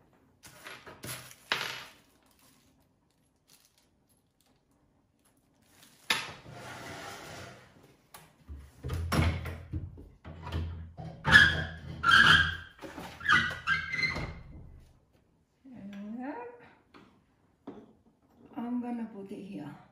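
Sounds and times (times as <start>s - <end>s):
curtain hardware scraping: 6.3s - 7.8s.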